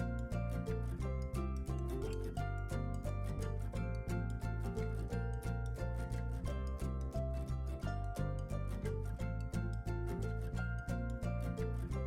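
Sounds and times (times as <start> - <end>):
music with quick beat and bass: 0.0 - 12.0.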